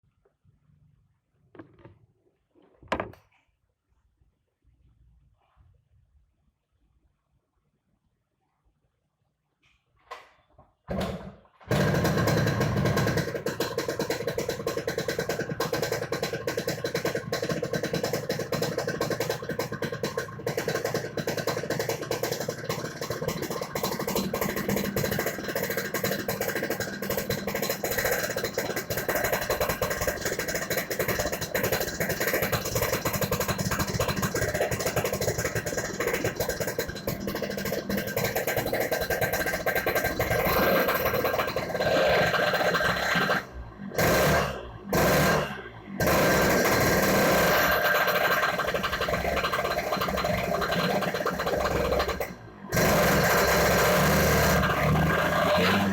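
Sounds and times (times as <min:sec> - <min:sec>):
motorcycle engine revving: 0:11.7 - 0:55.9.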